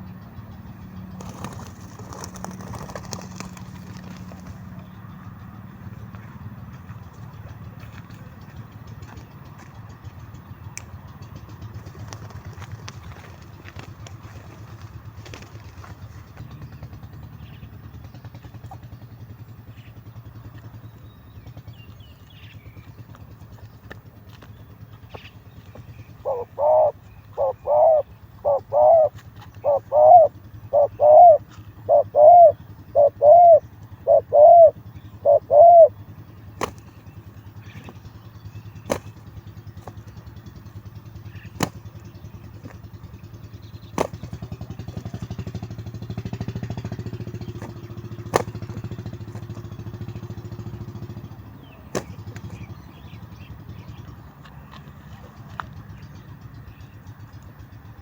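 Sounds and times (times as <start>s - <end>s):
dove cooing: 1.2s - 4.8s, 25.7s - 36.0s, 46.9s - 50.0s, 51.9s - 52.8s.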